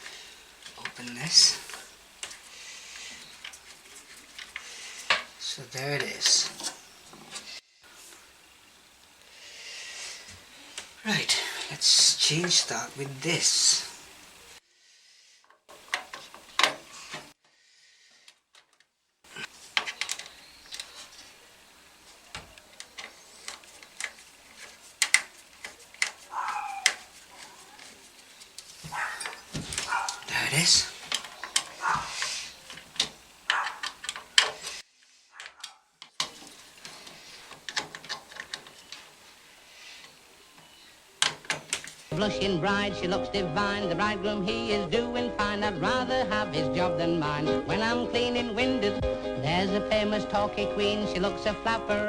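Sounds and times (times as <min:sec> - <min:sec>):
small hard parts clicking: 0:00.0 - 0:05.4, 0:18.2 - 0:21.2, 0:22.1 - 0:39.2, 0:40.0 - 0:42.1.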